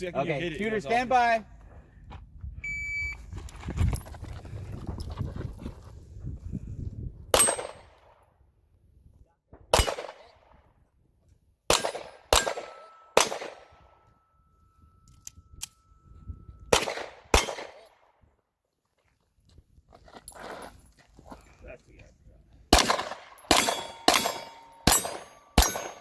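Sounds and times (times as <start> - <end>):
pistol shots hitting steel: 7.4 - 7.9, 11.7 - 13.9, 16.7 - 18.0, 22.7 - 26.0
faint steady ring: 12.5 - 16.7.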